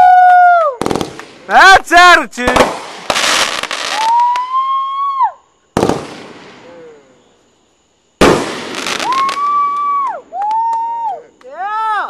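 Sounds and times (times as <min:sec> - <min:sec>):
firework burst with crackle: 0:00.8 - 0:01.5, 0:02.4 - 0:04.4, 0:05.8 - 0:06.8, 0:08.2 - 0:10.1
firework bang: 0:02.4 - 0:03.8, 0:05.8 - 0:06.8, 0:08.2 - 0:09.4
firework whistle: 0:02.5 - 0:06.0, 0:08.3 - 0:11.2.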